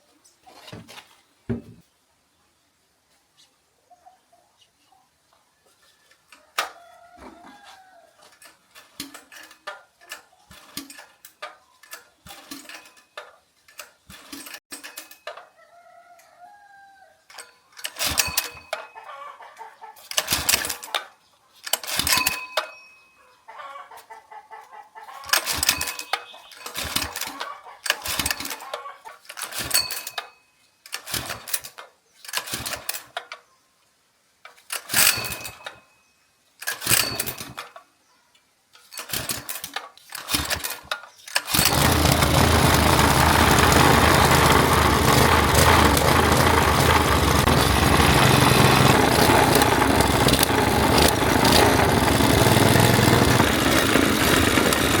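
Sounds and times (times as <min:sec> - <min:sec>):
engine recoil starter cranking: 0:17.3 - 0:18.8, 0:20.1 - 0:20.9, 0:21.7 - 0:22.4, 0:25.3 - 0:28.7, 0:29.3 - 0:30.2, 0:30.9 - 0:33.2, 0:34.7 - 0:35.8, 0:36.6 - 0:37.6, 0:39.0 - 0:55.0
chickens clucking: 0:19.0 - 0:20.1, 0:23.5 - 0:25.4, 0:27.3 - 0:27.9.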